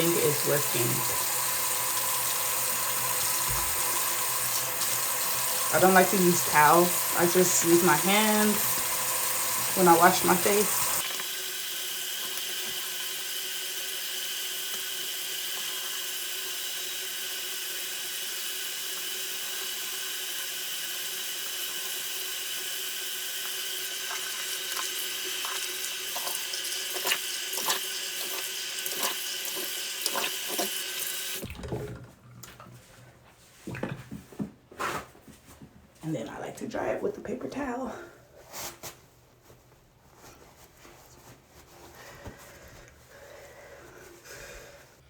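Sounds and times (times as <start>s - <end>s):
tap running into sink: 2.9s - 5.0s.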